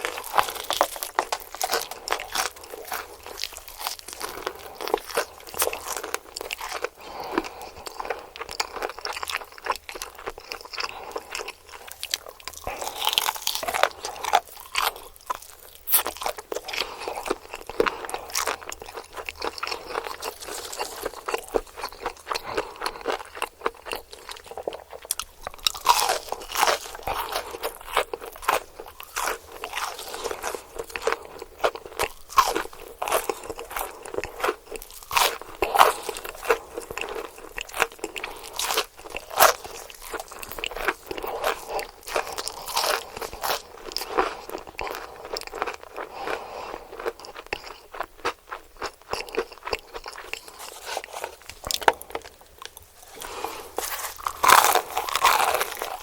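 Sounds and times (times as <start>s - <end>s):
chewing crunchy fried chicken: 0.0s - 56.0s.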